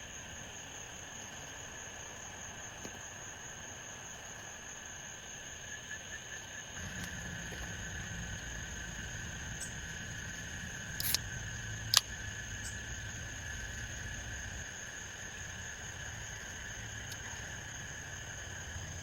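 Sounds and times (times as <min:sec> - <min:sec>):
insects trilling: 0:00.0 - 0:19.0
low rumble: 0:06.8 - 0:14.6
sharp clicks: 0:10.9 - 0:11.2, 0:11.9 - 0:12.2.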